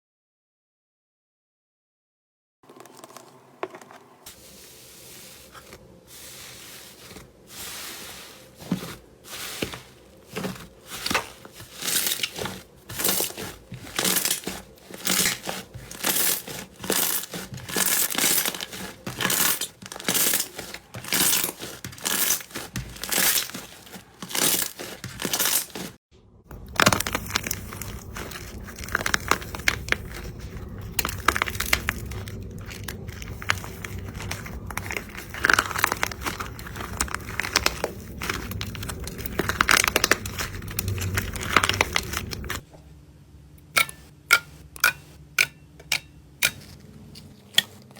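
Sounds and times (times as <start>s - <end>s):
slime squishing and crackling: 4.4s - 42.6s.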